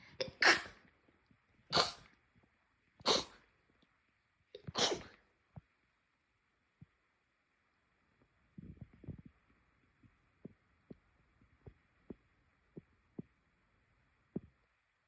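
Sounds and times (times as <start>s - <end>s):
person sneezing: 0.1s - 0.8s, 1.7s - 2.0s, 3.1s - 3.4s, 4.6s - 5.2s.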